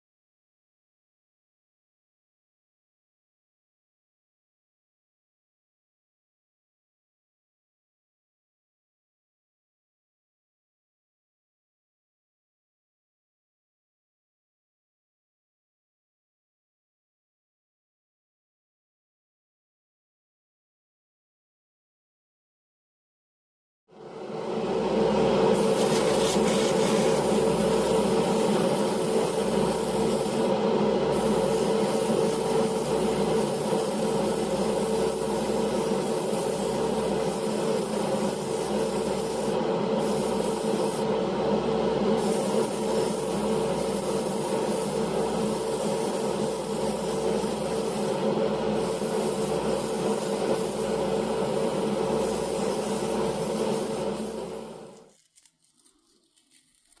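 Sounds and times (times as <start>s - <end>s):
polishing pad rubbing hiss: 25.5s - 41.1s, 42.1s - 57.0s.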